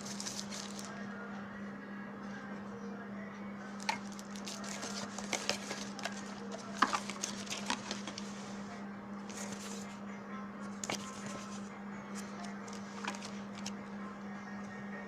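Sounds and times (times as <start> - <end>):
steady low hum: 0.0 - 15.0
objects clicking and tapping: 3.8 - 8.3.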